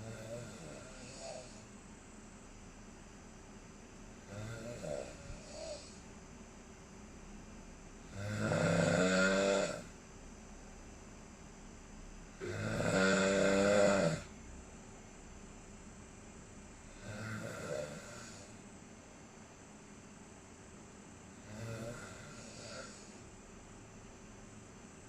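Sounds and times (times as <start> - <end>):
person snoring: 0.0 - 1.7, 4.2 - 6.1, 8.1 - 9.9, 12.4 - 14.3, 16.9 - 18.6, 21.3 - 23.2.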